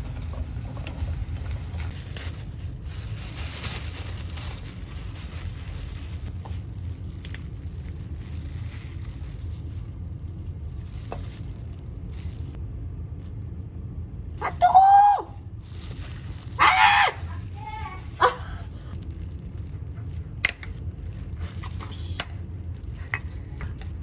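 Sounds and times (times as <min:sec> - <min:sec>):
steady low hum: 0:00.0 - 0:24.0
dog barking: 0:18.2 - 0:18.4.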